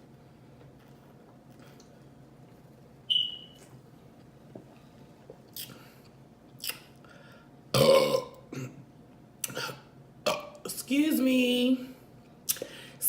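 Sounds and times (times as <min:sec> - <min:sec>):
loud short burp: 0:07.7 - 0:08.8.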